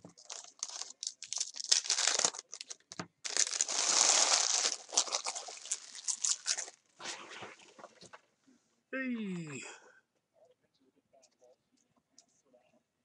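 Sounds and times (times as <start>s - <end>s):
foil wrappers tearing and crinkling: 0.2s - 6.8s.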